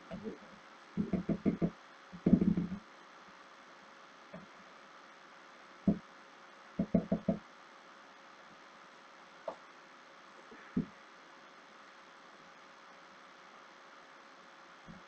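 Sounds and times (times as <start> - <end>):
plastic parts knocking: 1.0 - 2.8, 6.8 - 7.4.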